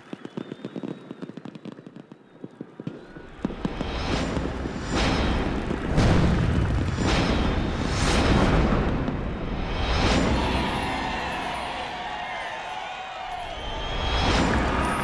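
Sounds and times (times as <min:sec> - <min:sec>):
fireworks crackling pops: 0:00.0 - 0:09.3
fireworks bursts: 0:00.0 - 0:15.0.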